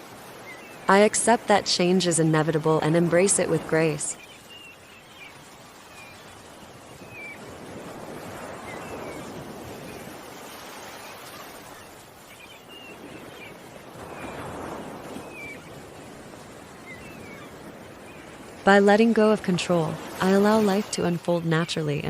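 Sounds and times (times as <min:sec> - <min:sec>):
ocean waves washing in: 0:00.0 - 0:22.0
small birds chirping: 0:03.8 - 0:07.6, 0:10.8 - 0:18.6.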